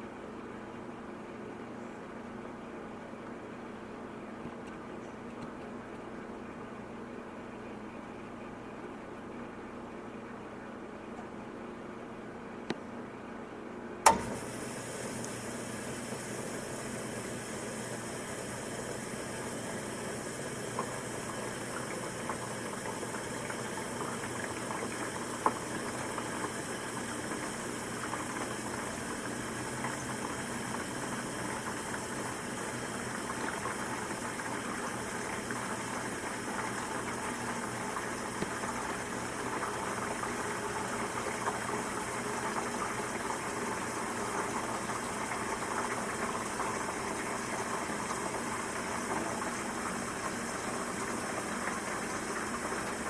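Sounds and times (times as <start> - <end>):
dishwasher motor hum: 0.0 - 53.0
small click: 14.0 - 14.3.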